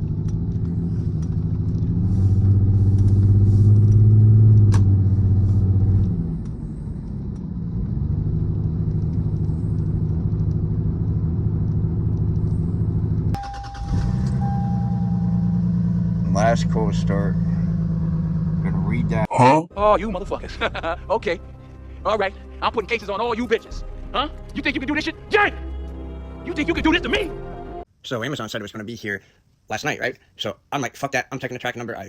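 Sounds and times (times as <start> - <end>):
car engine running: 0.0 - 19.3.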